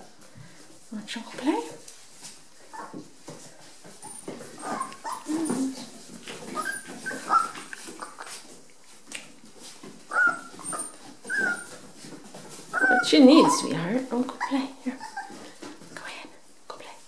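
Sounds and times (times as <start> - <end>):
puppies whimpering and yipping: 2.6 - 3.1, 3.8 - 8.6, 9.9 - 15.7
puppy whining: 2.6 - 3.1, 3.8 - 8.6, 9.8 - 15.7.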